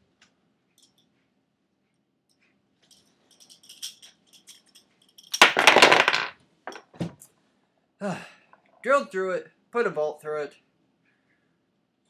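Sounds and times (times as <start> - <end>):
metal hardware jangling rattle: 2.8 - 6.8
metal hardware clinking: 2.9 - 6.9.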